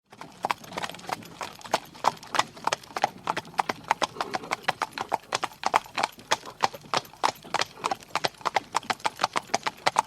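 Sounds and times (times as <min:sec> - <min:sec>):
horse hooves clip-clopping: 0:00.1 - 0:10.0.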